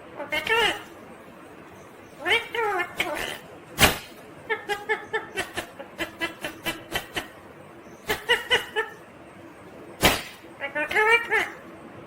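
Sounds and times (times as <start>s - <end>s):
parakeet chuckling chatter: 0.2s - 0.9s, 2.1s - 9.1s, 10.0s - 11.6s.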